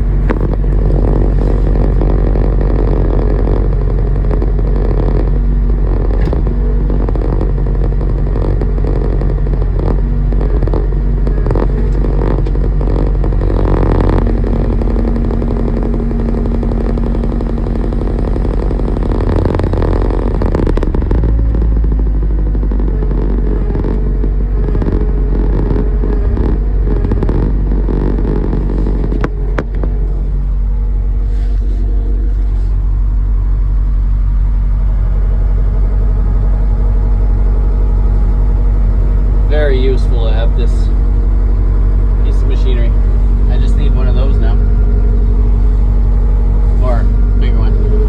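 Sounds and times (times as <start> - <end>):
higher steady hum: 0.0 - 48.0
skid steer engine running: 0.0 - 48.0.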